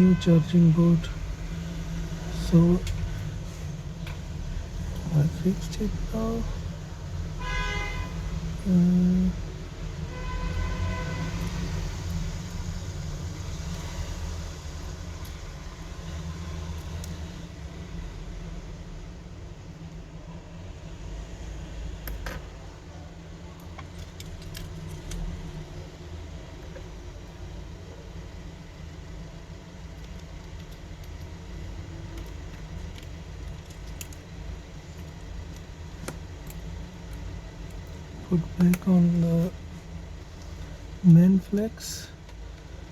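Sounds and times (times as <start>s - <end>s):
horn-like tone: 0.0s - 0.7s, 7.4s - 8.2s, 10.0s - 11.8s
low background hum: 0.0s - 42.9s
traffic rumble: 0.0s - 42.9s
faint clicks of small parts: 16.8s - 17.3s, 23.6s - 25.6s, 29.7s - 38.9s.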